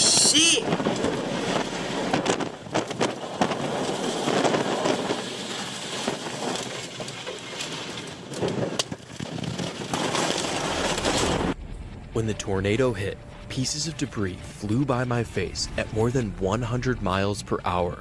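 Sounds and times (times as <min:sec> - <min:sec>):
wind and rain on a car: 0:00.0 - 0:11.6
debris banging on a car: 0:00.6 - 0:11.6.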